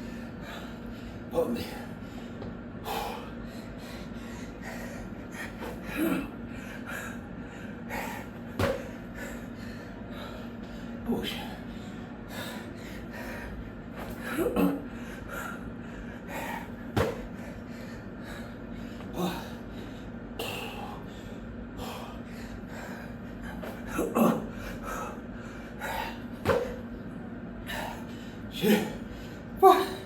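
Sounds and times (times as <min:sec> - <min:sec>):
man breathing heavily: 0:00.0 - 0:30.0
steady low hum: 0:00.0 - 0:30.0.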